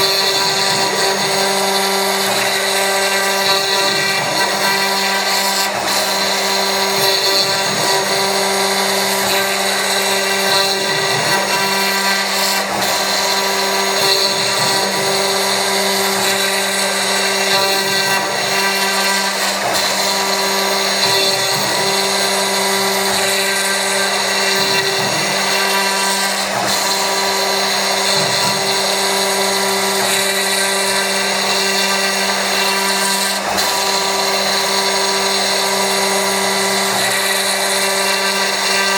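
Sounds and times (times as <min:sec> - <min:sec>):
milling machine whining: 0:00.0 - 0:38.9.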